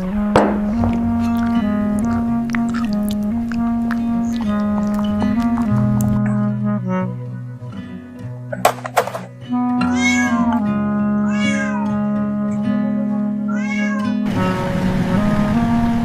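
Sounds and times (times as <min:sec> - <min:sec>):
background music with held notes: 0:00.0 - 0:16.0
cat meowing: 0:09.8 - 0:10.6, 0:11.2 - 0:12.0, 0:13.5 - 0:14.2.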